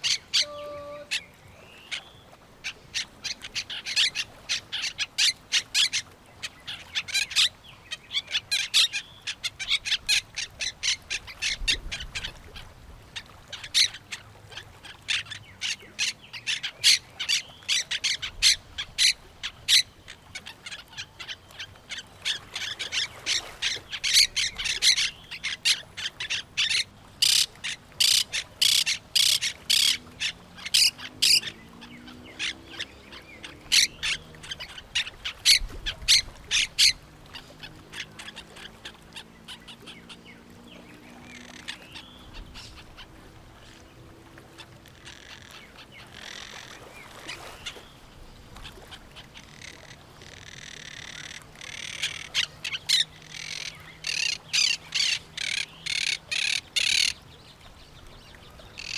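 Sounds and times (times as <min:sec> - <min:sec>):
parrots calling: 0:20.4 - 0:37.0, 0:49.4 - 0:57.2.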